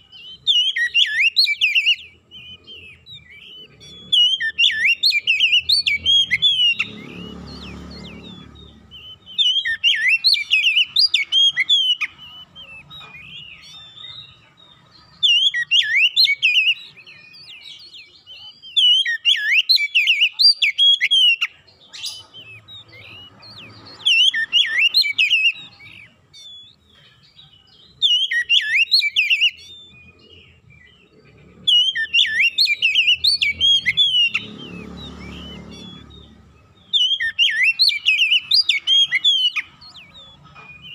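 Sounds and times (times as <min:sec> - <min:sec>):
bird singing whistled phrases: 0:00.0 - 0:40.9.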